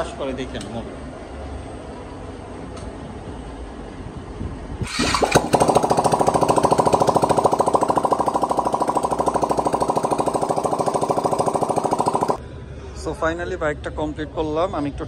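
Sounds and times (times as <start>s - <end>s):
motorcycle engine idling: 4.8s - 12.4s
motorcycle engine starting: 4.8s - 12.4s.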